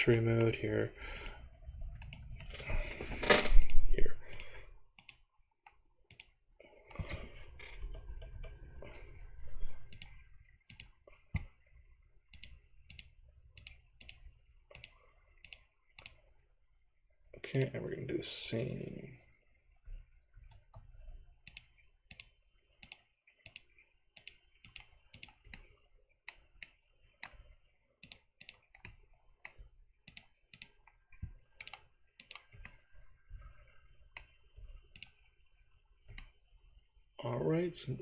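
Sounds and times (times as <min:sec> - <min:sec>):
mouse and keyboard clicking: 0:00.0 - 0:01.4, 0:02.0 - 0:05.2, 0:06.1 - 0:06.4, 0:09.8 - 0:11.5, 0:12.3 - 0:16.2, 0:21.4 - 0:25.7, 0:26.3 - 0:31.0, 0:31.6 - 0:32.8, 0:34.2 - 0:35.2.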